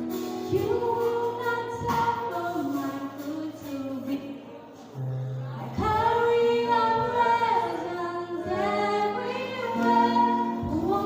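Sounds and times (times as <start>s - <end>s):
group singing a hymn: 5.5s - 11.0s.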